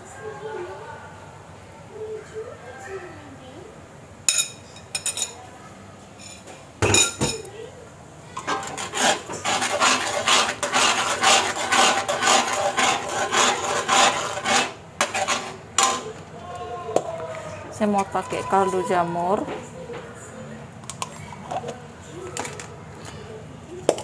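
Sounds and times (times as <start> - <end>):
utensil scraping metal pan: 8.4 - 16.2.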